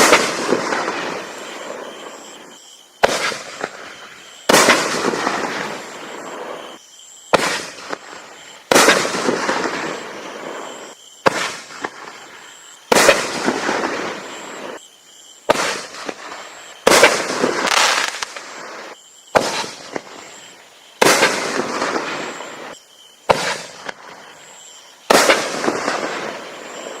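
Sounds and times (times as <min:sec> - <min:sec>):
loud firework bursts: 0:00.0 - 0:14.8, 0:15.4 - 0:27.0.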